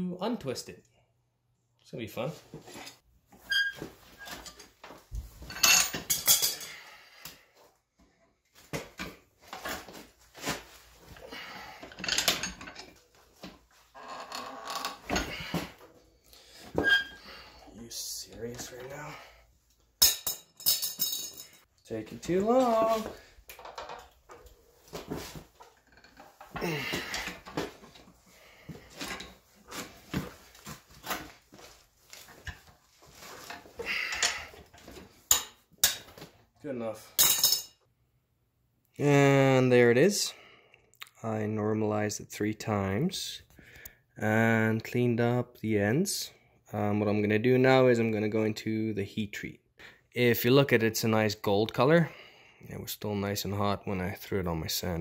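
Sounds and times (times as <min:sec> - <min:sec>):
metal tools clanking on steel: 0:05.4 - 0:06.8, 0:11.4 - 0:13.0, 0:20.0 - 0:24.5, 0:33.5 - 0:34.6, 0:37.2 - 0:37.8.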